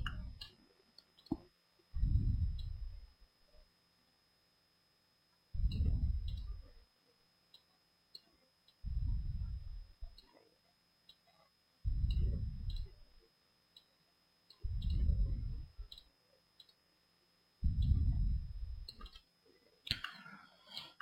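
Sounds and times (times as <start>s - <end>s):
low muffled puffs: 2.0s - 3.1s, 5.6s - 6.8s, 8.8s - 10.2s, 11.8s - 13.0s, 14.6s - 15.9s, 17.6s - 19.0s
computer mouse clicking: 12.1s - 12.9s, 18.8s - 19.3s.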